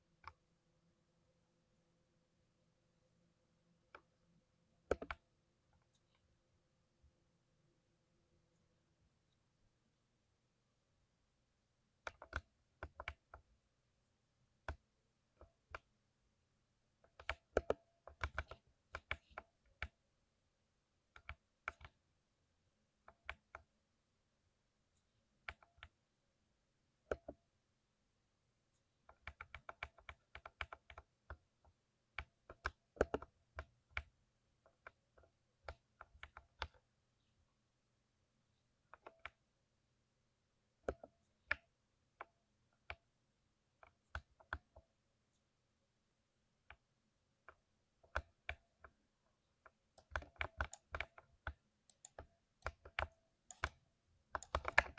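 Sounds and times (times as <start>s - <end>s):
keyboard typing clicks: 4.9s - 6.2s, 12.0s - 13.4s, 17.1s - 20.0s, 29.1s - 31.4s, 32.2s - 36.8s, 38.9s - 39.4s, 49.6s - 54.9s.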